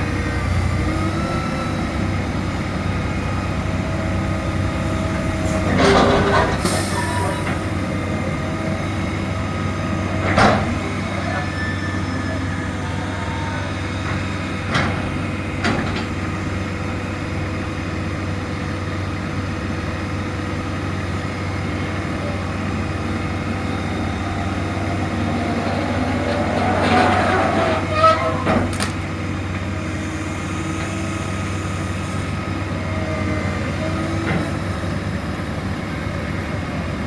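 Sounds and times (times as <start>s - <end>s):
heavy machinery engine running: 0.0s - 37.0s.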